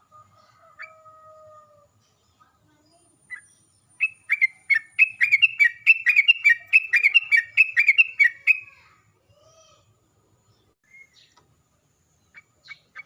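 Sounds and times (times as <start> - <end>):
bird singing whistled notes: 2.9 - 8.7, 10.8 - 11.4.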